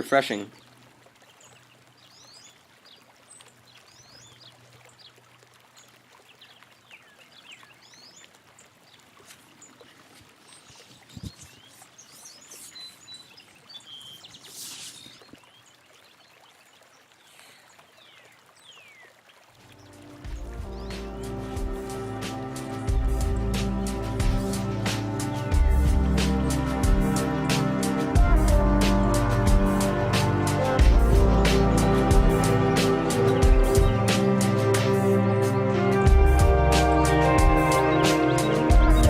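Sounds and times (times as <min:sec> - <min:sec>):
small birds chirping: 0:00.0 - 0:22.0, 0:30.4 - 0:36.2
water trickling: 0:00.0 - 0:39.0
splash-like hiss: 0:10.8 - 0:13.1, 0:14.3 - 0:15.4.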